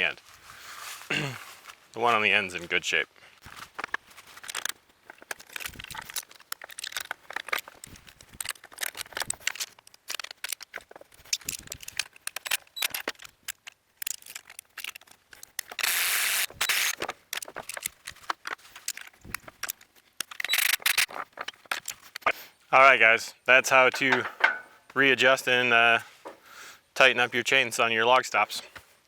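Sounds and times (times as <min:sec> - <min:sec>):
metal tool clicks and rattles: 0:03.8 - 0:22.2, 0:23.9 - 0:24.7.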